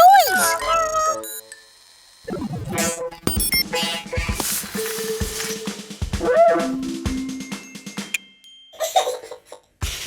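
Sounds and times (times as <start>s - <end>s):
cartoon background music: 0.0s - 1.5s, 2.3s - 8.2s.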